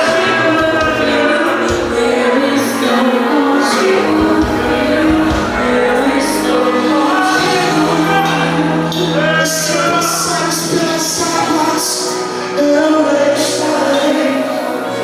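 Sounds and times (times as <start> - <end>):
worship music with singing: 0.0 - 15.0.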